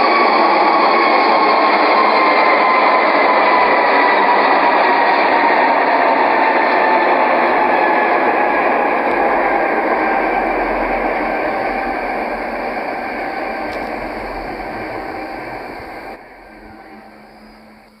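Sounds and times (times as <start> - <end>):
steady rushing noise: 7.3 - 18.0
faint steady tones: 8.2 - 18.0.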